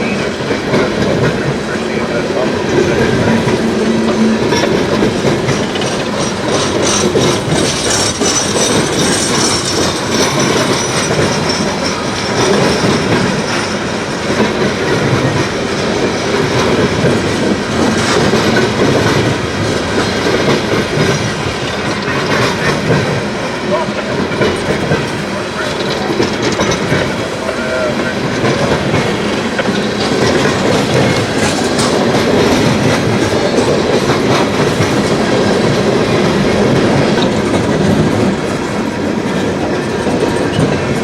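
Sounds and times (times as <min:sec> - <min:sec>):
train wheels clacking over joints: 0:00.0 - 0:41.0
high wheel squeal: 0:02.8 - 0:14.1.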